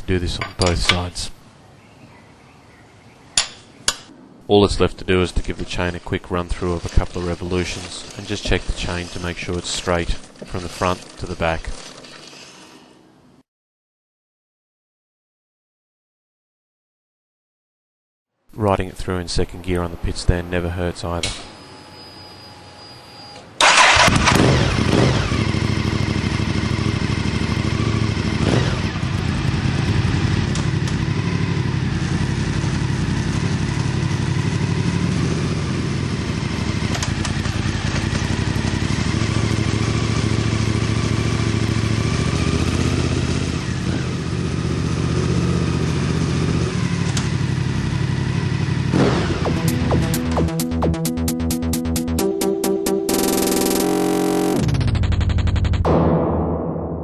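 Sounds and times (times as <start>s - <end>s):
motorcycle engine starting and running: 5.5s - 12.8s, 21.2s - 56.1s.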